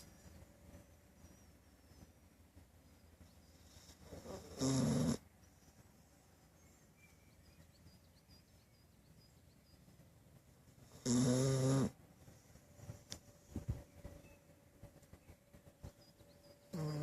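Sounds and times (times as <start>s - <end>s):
dog snoring: 3.5s - 5.2s, 10.8s - 12.0s, 16.7s - 17.0s.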